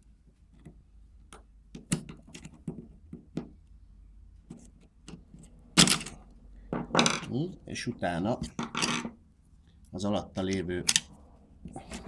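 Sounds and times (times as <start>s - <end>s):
light clicks and knocks of parts: 10.4s - 12.0s.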